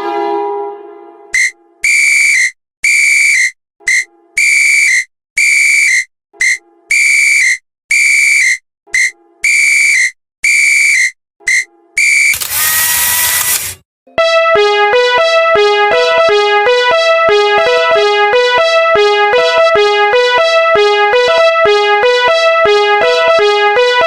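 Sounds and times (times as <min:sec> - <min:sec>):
shrill whistle blasts: 0:01.4 - 0:13.6
lower falling tone: 0:14.1 - 0:24.0.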